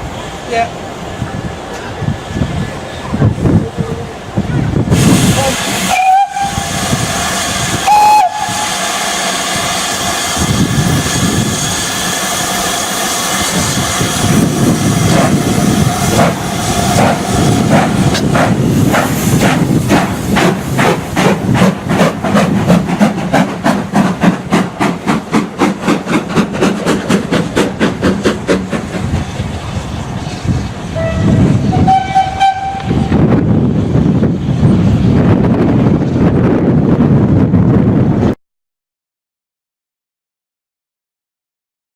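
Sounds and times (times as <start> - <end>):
steam hissing: 4.8 - 33.1
steam locomotive whistle blasts: 5.2 - 12.6, 31.0 - 33.2
locomotive chuffing: 5.2 - 30.8.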